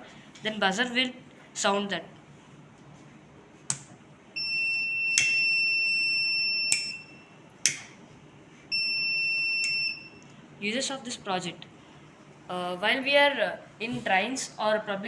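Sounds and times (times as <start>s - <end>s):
smoke detector buzzer high tone: 4.4s - 7.4s, 8.7s - 10.3s.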